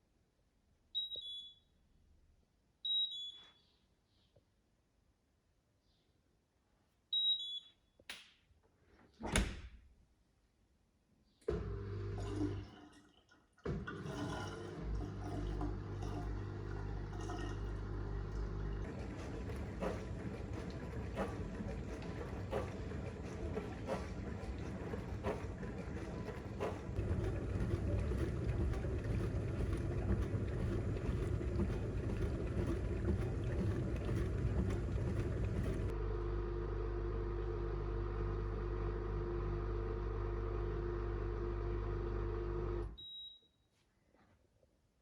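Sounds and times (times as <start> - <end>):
motor hum: 13.7 - 42.9
dishwasher spraying water: 14.0 - 35.9.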